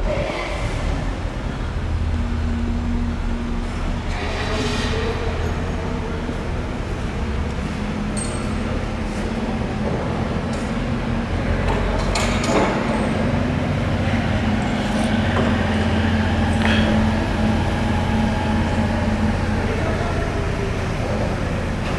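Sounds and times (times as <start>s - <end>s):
paddle mixer humming: 13.2s - 21.9s.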